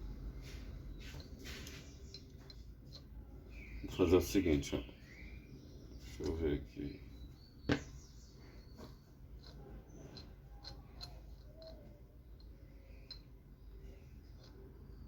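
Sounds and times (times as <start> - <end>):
hand tools tapping metal parts: 1.0 - 4.3, 6.1 - 6.6, 8.7 - 15.0.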